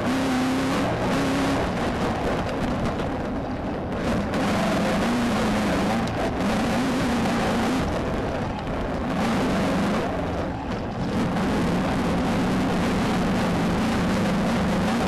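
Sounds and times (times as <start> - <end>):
chassis and dirt noise: 0.0 - 15.0
race car engine at high revs: 0.0 - 15.0.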